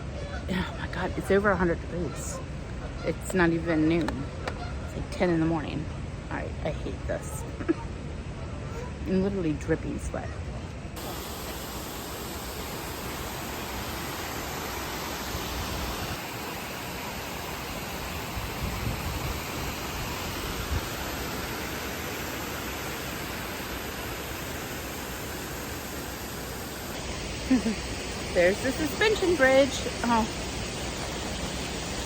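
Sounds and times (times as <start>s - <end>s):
waterfall rushing: 11.0s - 32.0s.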